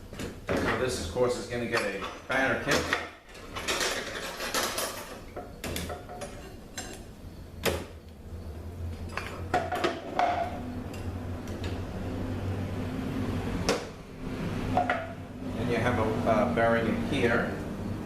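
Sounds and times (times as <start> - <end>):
metal parts clinking and knocking: 1.8 - 6.4.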